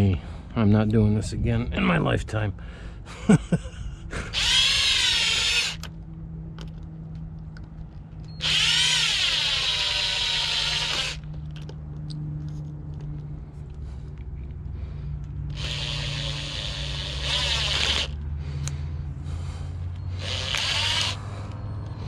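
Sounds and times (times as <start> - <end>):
steady low hum: 0.0 - 22.0
power drill whine: 4.3 - 5.9, 8.3 - 11.2, 15.5 - 18.2, 20.0 - 21.6.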